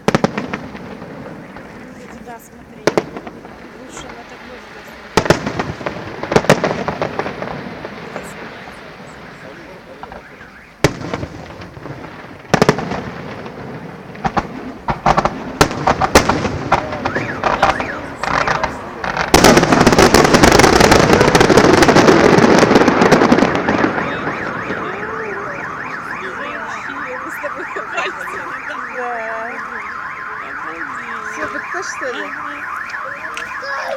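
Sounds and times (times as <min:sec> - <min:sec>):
firework bangs: 0:00.0 - 0:33.9
firework crackling: 0:00.0 - 0:33.9
car alarm warbling: 0:07.8 - 0:10.9, 0:16.7 - 0:33.9.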